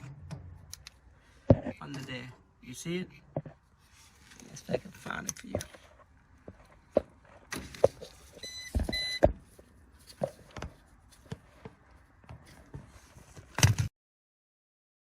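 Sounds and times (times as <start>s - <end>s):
parts clicking and knocking: 0.0s - 2.1s
short electronic beeps: 8.4s - 9.2s.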